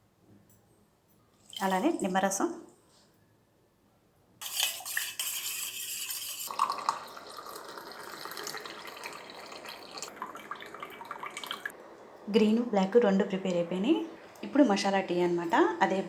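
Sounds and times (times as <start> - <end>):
liquid splashing and trickling: 4.4 - 11.8.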